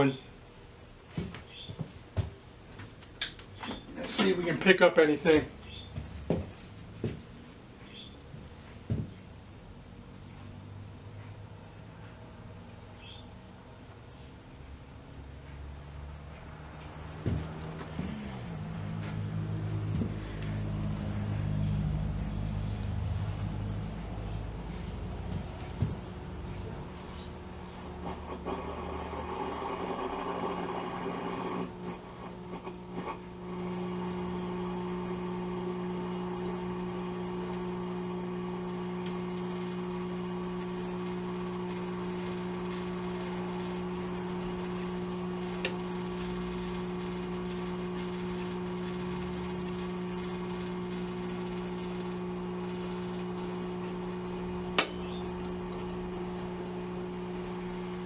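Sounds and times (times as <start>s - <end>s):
radio speaker hum: 16.3s - 58.0s
static crackles: 24.2s - 58.0s
radio static: 26.3s - 38.6s.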